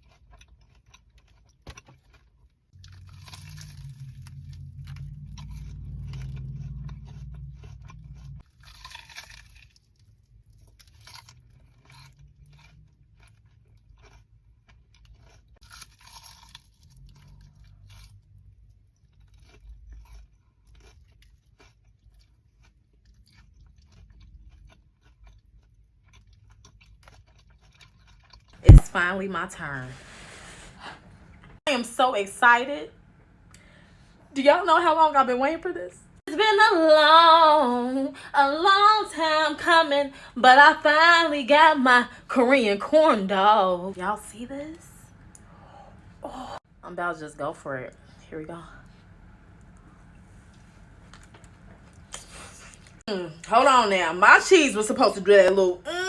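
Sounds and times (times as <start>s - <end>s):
crunching and chewing: 0.0s - 28.8s, 48.8s - 53.1s
deep muffled rumble: 3.7s - 8.4s.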